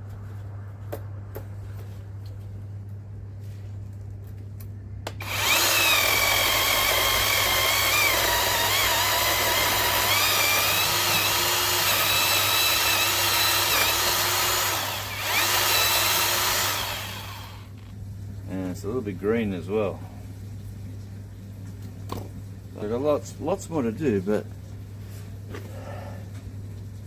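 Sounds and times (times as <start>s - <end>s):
electric chainsaw cutting log: 5.1s - 17.7s.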